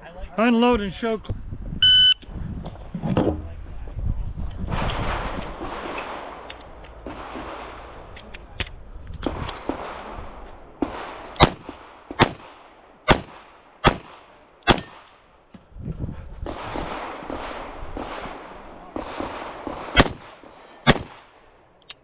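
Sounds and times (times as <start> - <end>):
handgun shots: 13.1 - 15.0, 19.9 - 20.3, 20.9 - 21.2.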